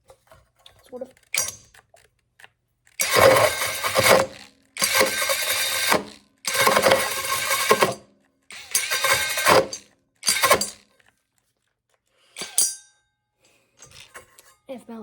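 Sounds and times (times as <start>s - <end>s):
cordless drill with hole saw cutting wood: 3.0s - 10.9s.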